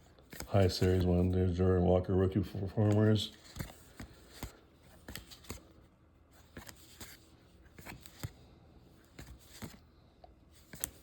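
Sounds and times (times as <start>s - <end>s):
cards flicking and sliding: 2.8s - 5.8s, 6.4s - 9.9s, 10.5s - 11.0s.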